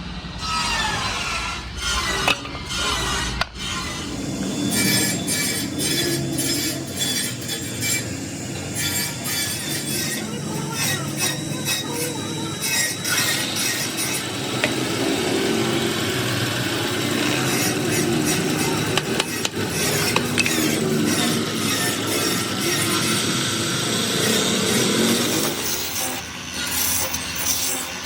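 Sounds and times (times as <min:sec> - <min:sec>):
rasping strokes: 0:00.4 - 0:28.0
workshop background din: 0:00.4 - 0:28.0.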